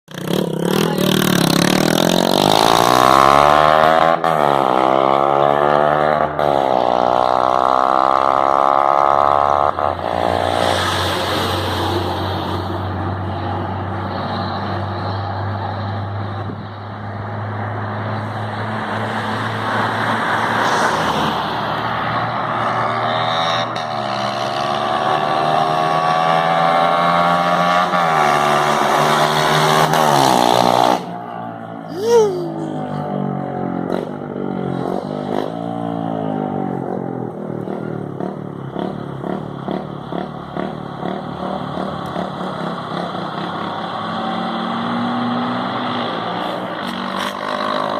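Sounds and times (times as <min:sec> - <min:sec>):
loud motorcycle engine accelerating: 0:00.1 - 0:11.5, 0:22.6 - 0:31.2, 0:32.0 - 0:47.9.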